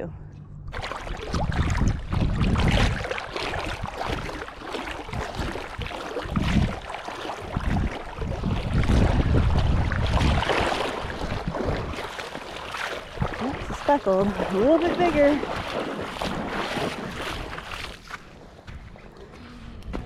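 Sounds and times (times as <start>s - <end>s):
wind gusting across microphone: 0.7s - 17.8s
water washing: 0.7s - 19.4s.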